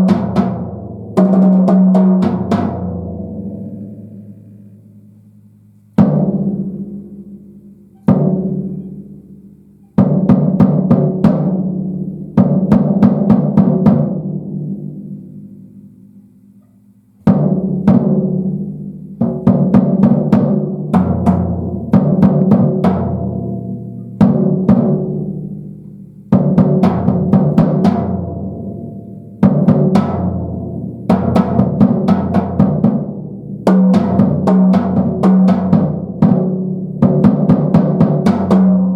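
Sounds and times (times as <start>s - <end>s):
drum kit played solo: 0.0s - 15.6s, 17.2s - 38.9s.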